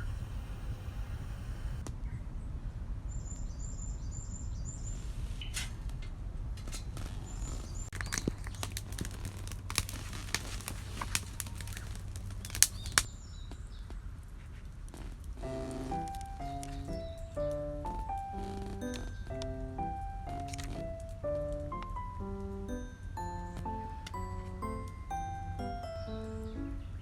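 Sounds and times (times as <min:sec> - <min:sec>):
wind rumble on microphone: 0:00.0 - 0:15.4
small bird chirping: 0:15.4 - 0:21.0
sharp clicks and taps: 0:20.3 - 0:22.0.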